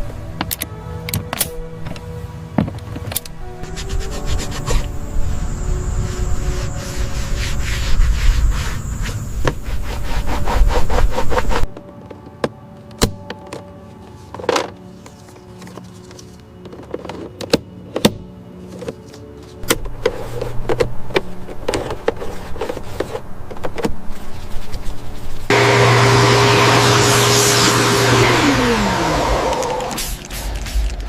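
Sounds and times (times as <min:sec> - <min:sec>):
soft background music: 0:00.0 - 0:08.8, 0:09.8 - 0:25.5
sanding strokes: 0:03.6 - 0:04.9, 0:06.0 - 0:11.7.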